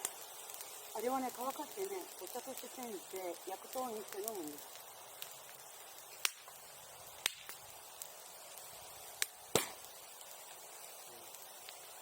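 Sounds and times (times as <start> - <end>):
bonfire crackling: 0.0 - 12.0
sharp pops from burning wood: 0.0 - 12.0.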